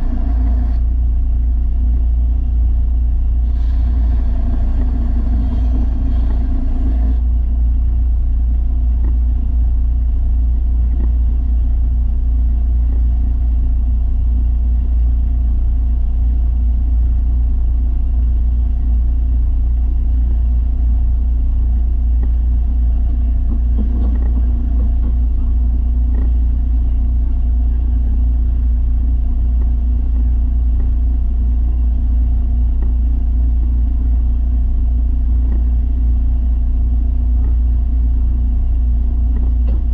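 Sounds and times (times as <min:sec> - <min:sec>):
belt sander running: 0:00.0 - 0:00.8, 0:03.5 - 0:07.2.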